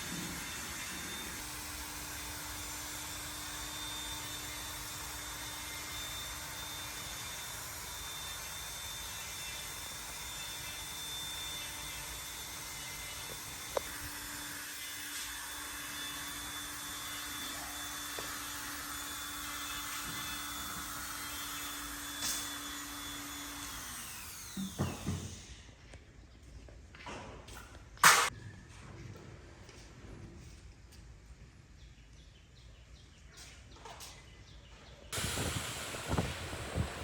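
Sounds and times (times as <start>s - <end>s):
workshop machine whirring: 0.0s - 25.3s, 35.2s - 37.0s.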